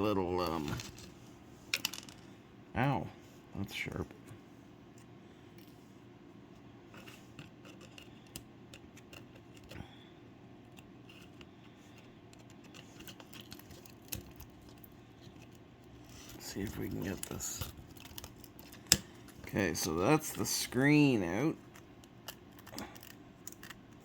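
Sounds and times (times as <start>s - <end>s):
low steady hum: 0.0s - 24.0s
small tools clicking and scraping: 6.9s - 9.9s, 10.7s - 19.5s, 21.6s - 24.0s.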